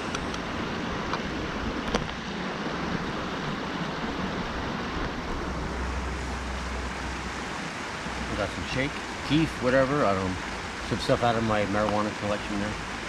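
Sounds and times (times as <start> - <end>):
river flowing: 0.0 - 13.0.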